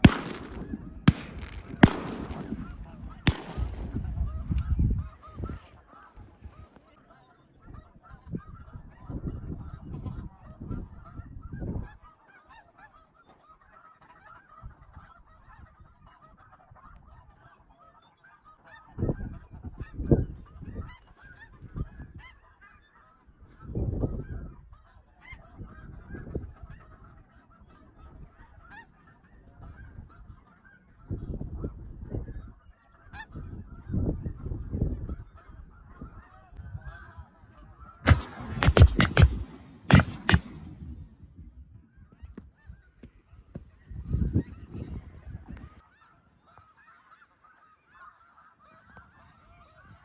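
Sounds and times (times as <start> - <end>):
low rumbles: 0.0 - 4.7
geese honking and yelping: 0.0 - 6.7, 45.8 - 50.0.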